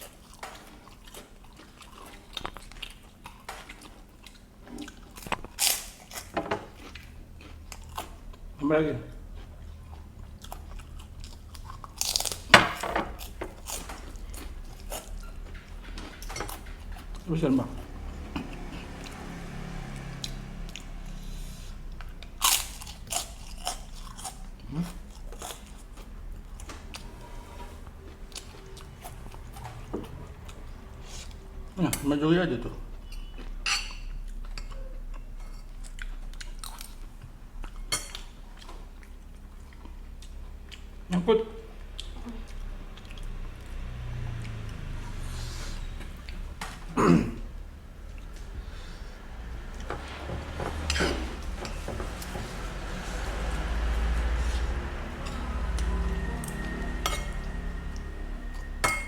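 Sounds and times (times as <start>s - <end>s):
chewing and lip smacks: 0.0s - 8.5s, 9.1s - 12.5s, 34.2s - 41.1s, 41.7s - 45.1s
person chewing crunchy food: 0.0s - 17.3s, 18.0s - 31.7s, 32.7s - 41.1s.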